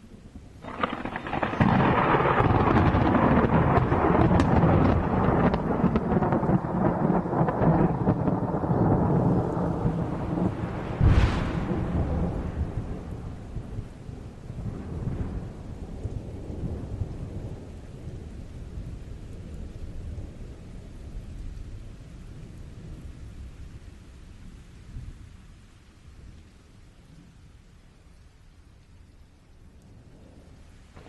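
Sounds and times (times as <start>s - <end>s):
rain falling: 0.0s - 31.0s
thunder crack and rumble: 0.4s - 23.2s.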